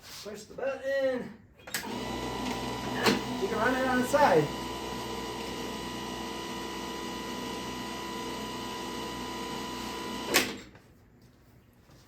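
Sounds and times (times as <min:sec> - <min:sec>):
electric lawnmower motor hum: 0:01.8 - 0:10.4.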